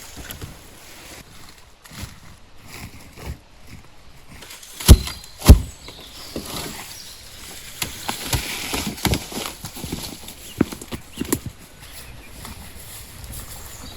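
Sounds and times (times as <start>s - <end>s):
rustling: 0.0s - 13.9s
loud knocks: 4.8s - 5.8s.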